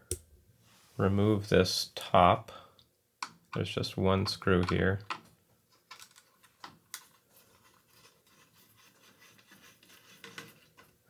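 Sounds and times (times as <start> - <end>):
screwdriver clicking and scratching: 5.8 - 10.9.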